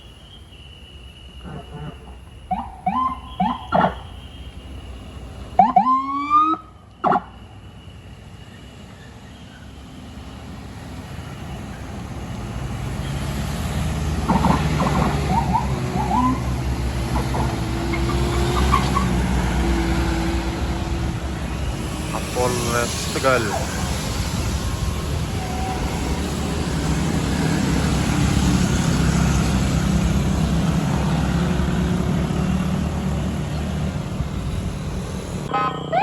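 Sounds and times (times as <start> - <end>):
siren whoop: 2.5 - 4.0, 5.6 - 7.2, 14.3 - 16.7, 35.5 - 36.0
vehicle engine approaching: 10.6 - 36.0.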